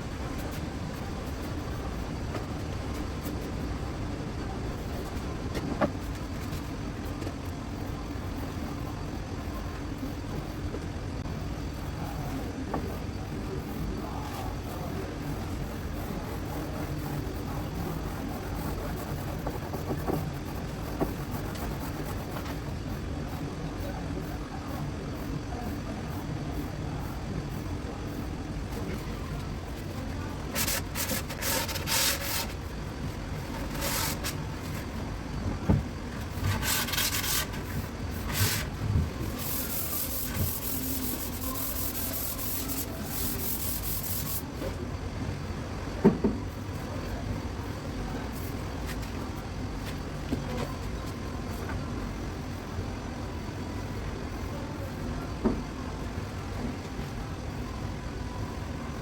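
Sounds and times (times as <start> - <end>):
hand sanding wood: 36.4 - 37.6, 39.3 - 44.4.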